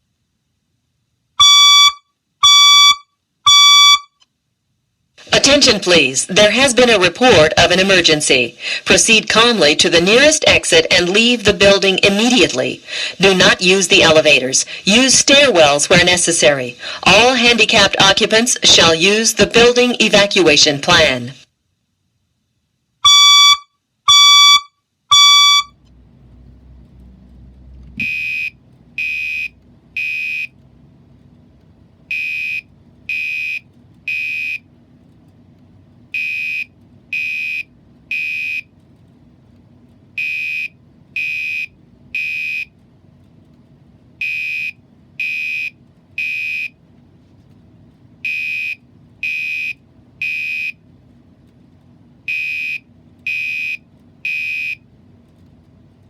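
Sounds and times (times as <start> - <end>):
fire alarm beeping: 1.4 - 4.2, 23.0 - 25.8, 28.0 - 30.6, 32.1 - 34.6, 36.2 - 38.7, 40.2 - 42.7, 44.2 - 46.8, 48.2 - 50.8, 52.3 - 54.8
low pure-toned beeps: 23.1 - 25.8.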